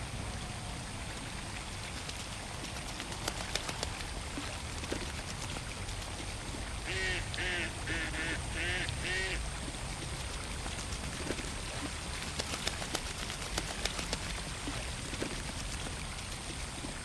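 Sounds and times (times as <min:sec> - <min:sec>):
water splashes and drips: 0:00.0 - 0:17.0
ducks quacking: 0:06.6 - 0:09.8.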